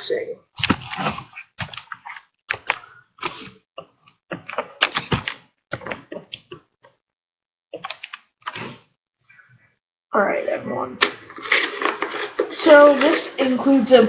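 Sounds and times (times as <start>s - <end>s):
cardboard and plastic wrap crackling: 11.2s - 13.9s.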